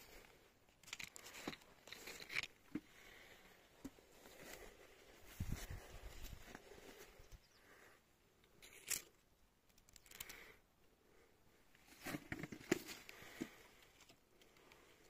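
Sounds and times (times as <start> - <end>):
rustling and crackling: 0.0 - 7.2.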